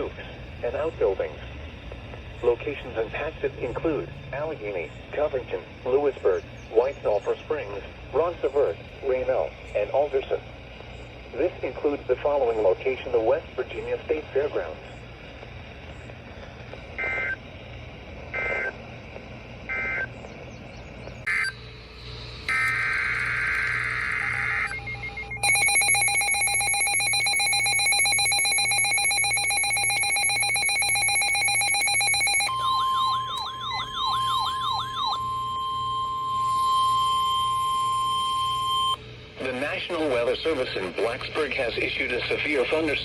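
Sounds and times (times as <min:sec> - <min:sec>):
digital data bursts: 0:11.2 - 0:18.8, 0:19.6 - 0:20.1, 0:21.2 - 0:43.0
warbling chirp: 0:19.7 - 0:39.0
steady electronic alert tone: 0:21.2 - 0:39.0.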